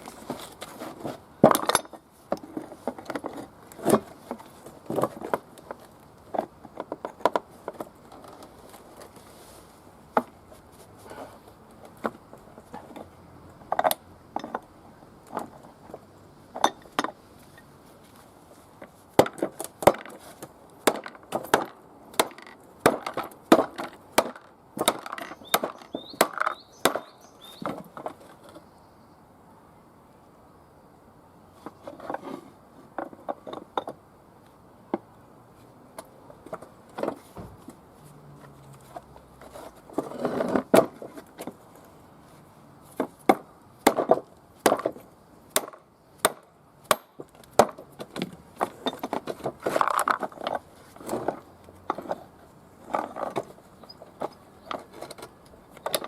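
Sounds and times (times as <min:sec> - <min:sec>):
hand tools knocking and clacking: 0:20.9 - 0:27.1.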